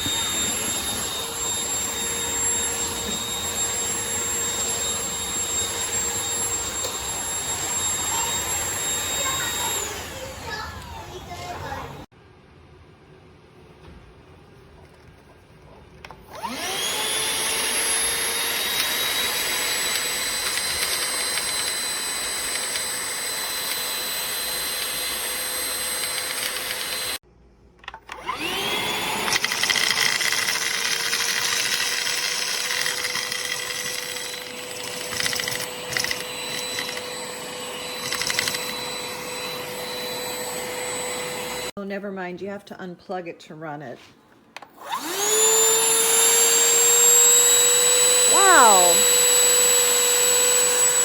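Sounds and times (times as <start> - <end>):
vacuum rattling and sucking: 0.0 - 12.0
vacuum motor whining: 0.0 - 12.1, 16.2 - 27.2, 28.0 - 41.7, 44.8 - 51.0.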